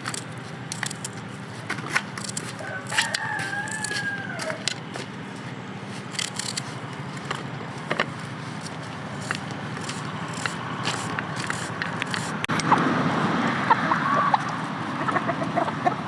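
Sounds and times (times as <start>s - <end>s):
light clicks and scraping: 0.0s - 12.5s.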